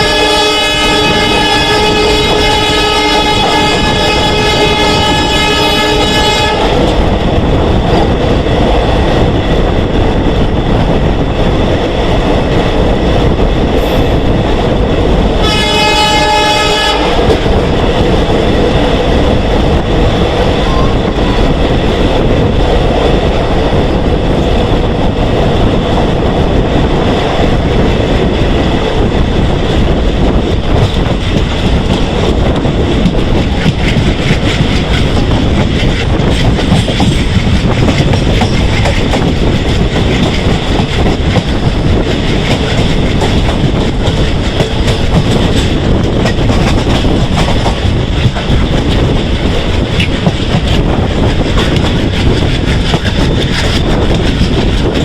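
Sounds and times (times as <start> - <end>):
locomotive horn: 0.0 - 6.8, 15.4 - 17.2
train wheels on track: 0.0 - 55.0.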